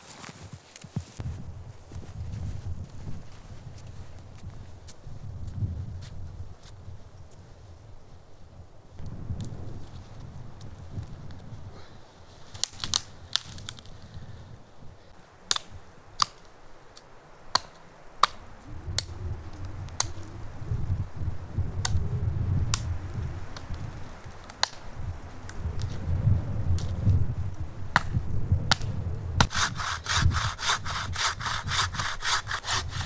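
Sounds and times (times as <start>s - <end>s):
low rumble: 9.0s - 11.7s, 18.6s - 29.5s
twigs snapping: 12.4s - 14.2s, 15.4s - 20.4s, 21.8s - 26.0s, 26.7s - 27.2s, 27.9s - 29.6s.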